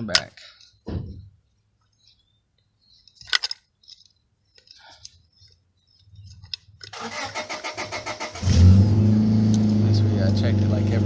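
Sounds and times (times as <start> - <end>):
metal tools clicking: 2.9 - 7.0.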